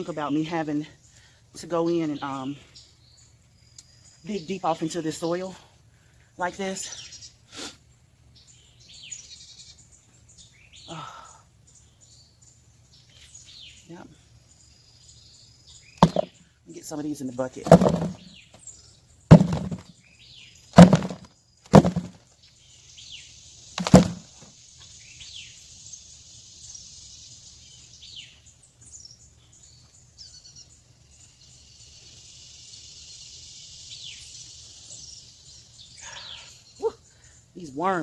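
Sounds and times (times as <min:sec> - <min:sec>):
faint high insect hiss: 0:02.5 - 0:06.3, 0:22.4 - 0:37.8
birds chirping: 0:13.0 - 0:22.2
potatoes thunking into bucket: 0:16.0 - 0:16.3, 0:17.6 - 0:18.3, 0:19.3 - 0:19.9, 0:20.8 - 0:22.2, 0:23.8 - 0:24.4.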